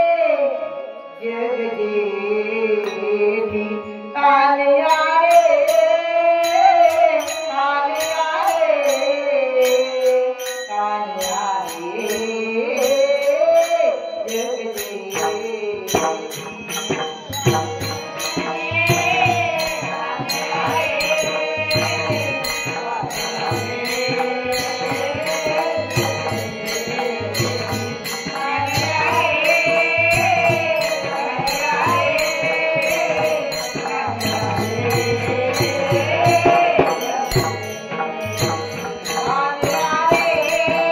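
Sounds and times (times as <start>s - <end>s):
woman singing: 0.0s - 40.9s
hand cymbals ticking: 6.9s - 40.9s
drum beat: 16.0s - 19.7s.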